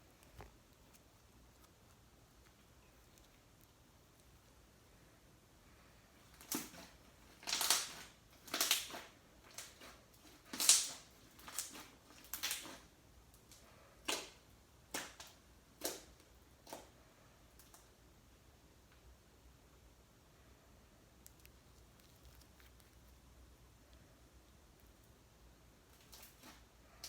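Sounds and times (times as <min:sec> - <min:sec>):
slime crackling and squelching: 0:06.2 - 0:16.9.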